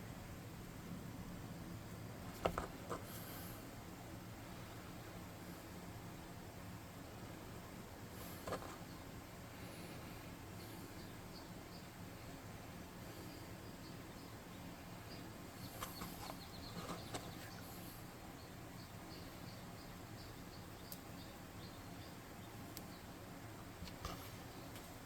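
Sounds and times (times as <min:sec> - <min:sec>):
clicks and rustles of handling: 0:15.7 - 0:17.6.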